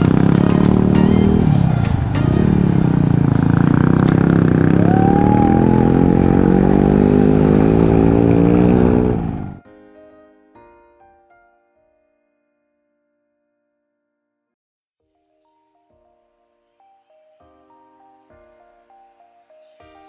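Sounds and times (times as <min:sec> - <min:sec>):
motorcycle engine revving: 0:00.0 - 0:09.6.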